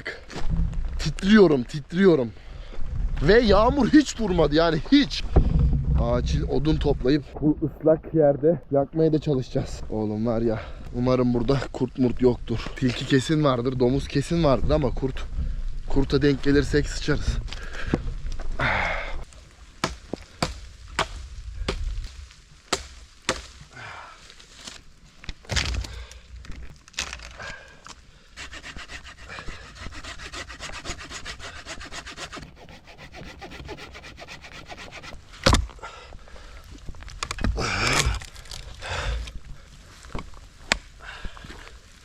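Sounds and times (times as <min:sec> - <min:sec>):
sticks cracking and knocking: 0:19.3 - 0:28.0, 0:37.0 - 0:39.4, 0:40.0 - 0:41.0
wood rubbing rasp: 0:28.3 - 0:35.3.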